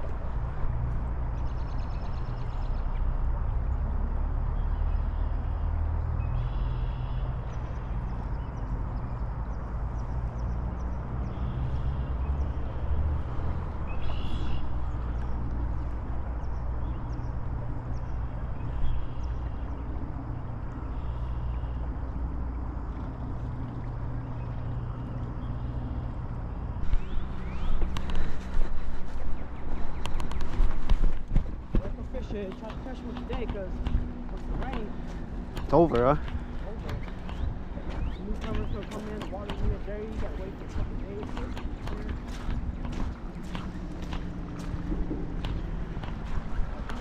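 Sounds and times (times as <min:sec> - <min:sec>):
steady low rumble: 0:00.0 - 0:47.0
high bird calls: 0:13.8 - 0:15.4, 0:34.0 - 0:47.0.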